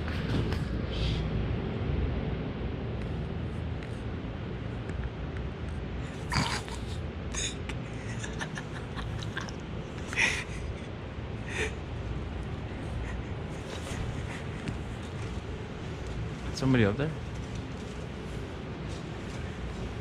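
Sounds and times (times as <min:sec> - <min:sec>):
wind rumble: 0:07.1 - 0:20.0.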